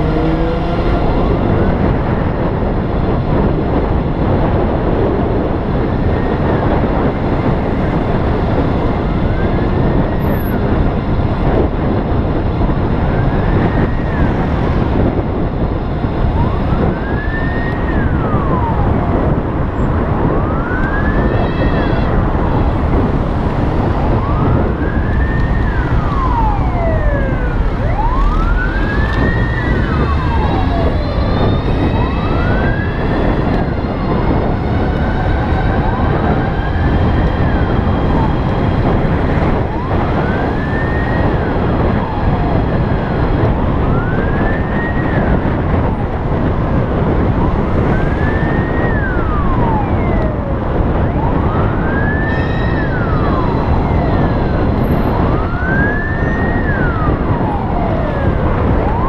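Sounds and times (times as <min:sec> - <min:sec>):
emergency siren wailing: 0:00.0 - 0:59.0
low wind: 0:00.0 - 0:59.0
road rumble: 0:00.0 - 0:59.0.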